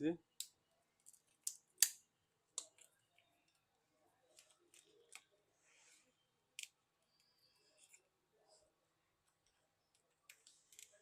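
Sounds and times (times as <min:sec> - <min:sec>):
soft scrape of phone screen: 0:05.5 - 0:06.3.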